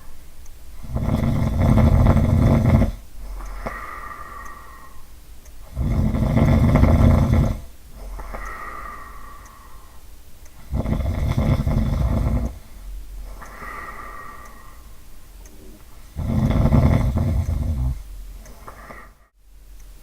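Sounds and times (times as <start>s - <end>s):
low fluttering snore: 0.8s - 3.0s, 5.7s - 9.0s, 10.7s - 13.3s, 16.2s - 18.1s.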